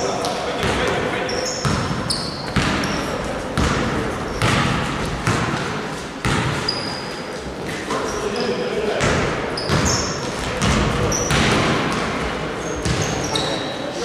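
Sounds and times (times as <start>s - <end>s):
voices in echoing hall: 0.0s - 14.0s
sneakers squeaking on court: 0.2s - 5.6s, 6.2s - 13.9s
basketballs bouncing on gym floor: 0.6s - 1.0s, 1.6s - 6.8s, 8.9s - 13.5s.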